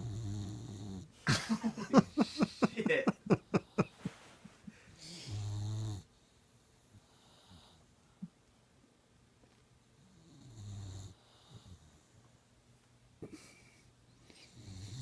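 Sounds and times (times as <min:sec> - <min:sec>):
puppy snoring: 0:00.0 - 0:01.2, 0:05.0 - 0:06.2, 0:10.0 - 0:12.1, 0:14.4 - 0:15.0.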